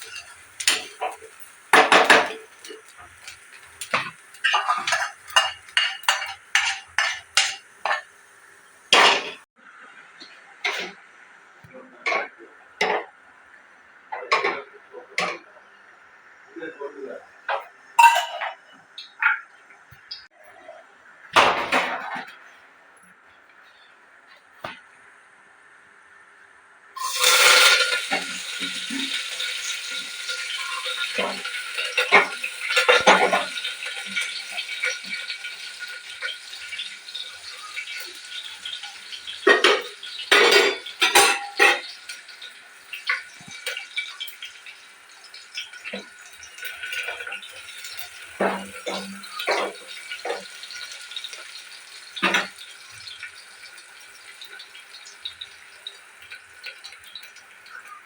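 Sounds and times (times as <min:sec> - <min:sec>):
spoon scraping and knocking on pan: 0:03.8 - 0:08.1, 0:17.5 - 0:18.6
pan hissing: 0:27.0 - 0:35.0.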